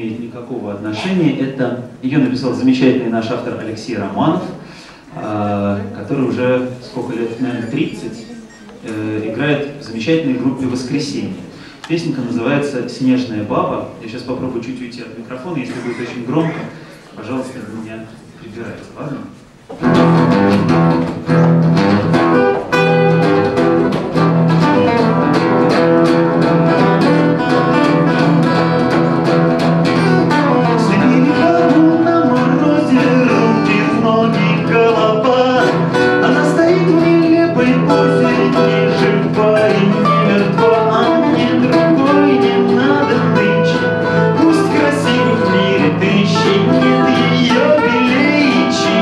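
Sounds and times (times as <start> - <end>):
acoustic guitar playing: 19.7 - 49.0.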